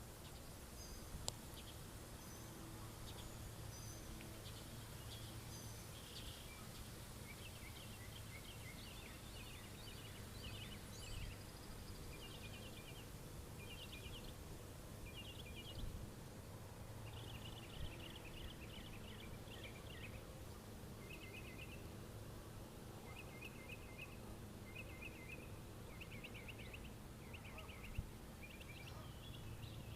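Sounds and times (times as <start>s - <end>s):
small birds chirping: 0.0s - 16.1s, 16.8s - 22.0s, 22.9s - 29.9s.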